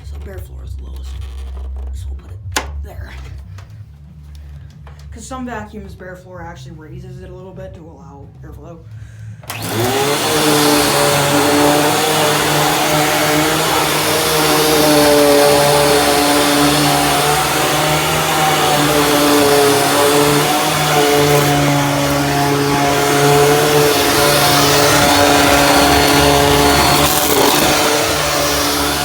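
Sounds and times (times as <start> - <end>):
vacuum cleaner motor whine: 9.5 - 29.0.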